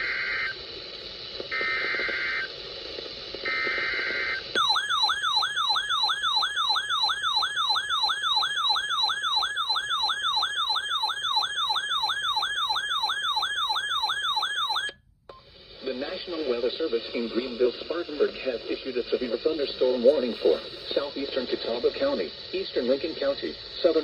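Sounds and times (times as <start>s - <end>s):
radio hiss: 0.0s - 4.5s, 15.4s - 24.0s.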